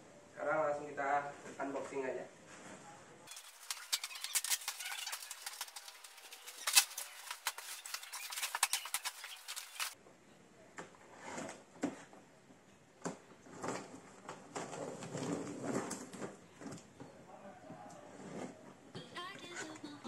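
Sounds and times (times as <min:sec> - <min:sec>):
packaging crackling and rustling: 0:03.3 - 0:10.0.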